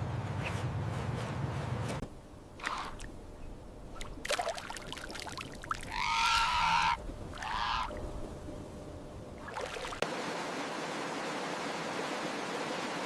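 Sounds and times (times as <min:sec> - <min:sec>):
animal calling: 0:02.6 - 0:03.1, 0:05.8 - 0:08.0.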